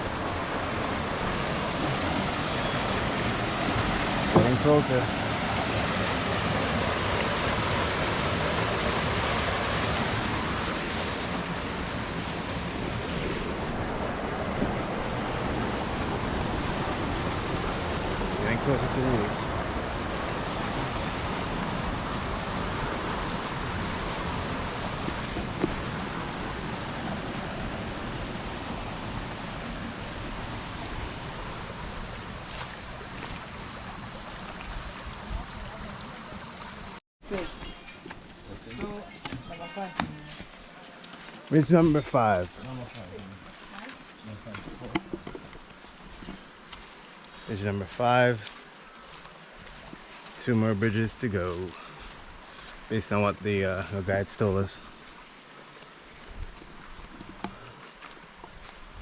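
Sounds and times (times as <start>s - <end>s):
rushing stream water: 0.0s - 37.0s, 44.8s - 59.0s
thin high-pitched tone: 2.2s - 4.9s.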